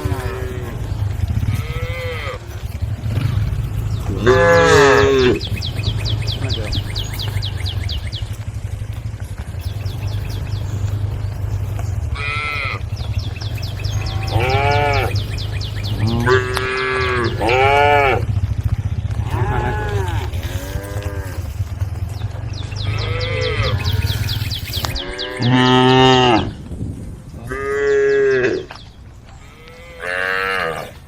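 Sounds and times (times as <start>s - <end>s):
cattle mooing: 0.0s - 7.8s, 11.7s - 18.4s, 19.1s - 21.9s, 22.7s - 26.6s, 27.4s - 28.8s, 29.4s - 31.0s.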